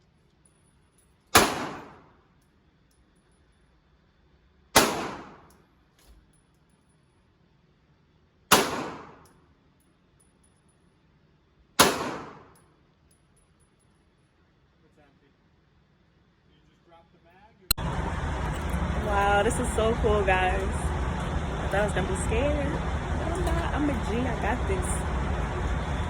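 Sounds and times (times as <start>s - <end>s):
gunshots with echo: 1.4s - 2.1s, 4.8s - 5.5s, 8.5s - 9.2s, 11.8s - 12.6s.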